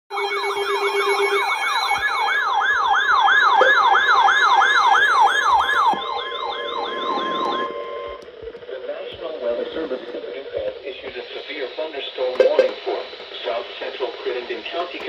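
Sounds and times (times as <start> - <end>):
steady alert tone: 0.1 - 2.2
electronic yelp siren: 0.1 - 8.3.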